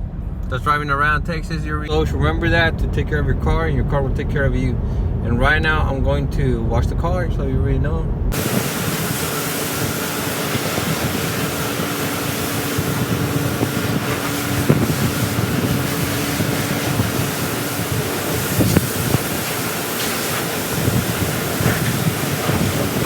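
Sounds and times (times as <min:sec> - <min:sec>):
water spraying over a car: 0:08.3 - 0:23.0.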